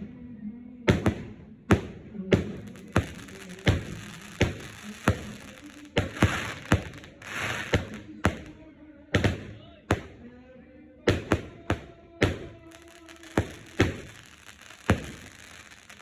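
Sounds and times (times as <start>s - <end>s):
firework cake bangs: 0.9s - 8.6s, 9.2s - 10.3s, 11.1s - 16.0s
firework hiss: 2.4s - 8.5s, 12.6s - 16.0s.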